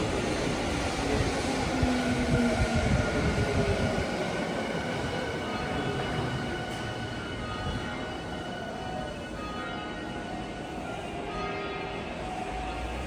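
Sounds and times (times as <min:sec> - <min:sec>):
train wheels rumbling on rail: 0:00.0 - 0:09.3
train clunks: 0:05.0 - 0:07.9.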